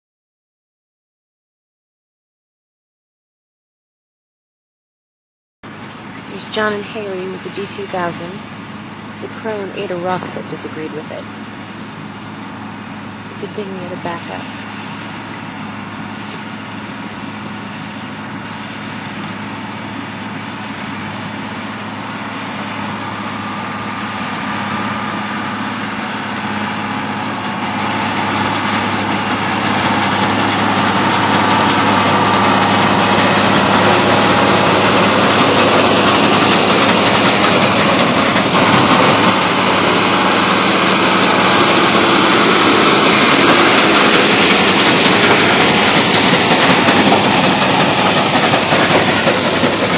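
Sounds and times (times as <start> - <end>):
tractor and baler running: 5.7 - 49.9.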